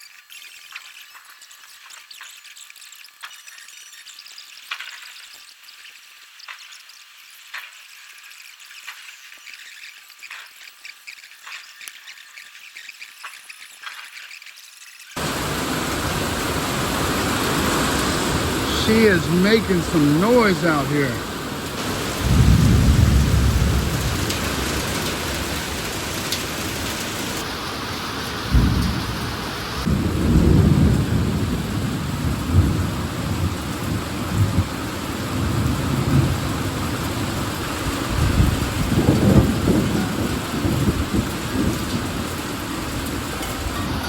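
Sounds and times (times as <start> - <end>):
steady rain: 15.2 - 44.0
rolling thunder: 21.2 - 27.0, 28.4 - 37.2.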